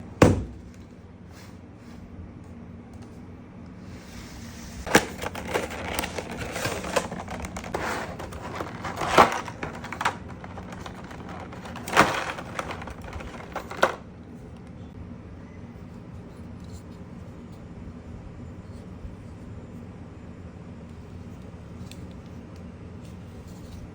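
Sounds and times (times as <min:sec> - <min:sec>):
louder knocks: 0:00.2 - 0:00.6
packaging clicks and crinkles: 0:04.9 - 0:14.0.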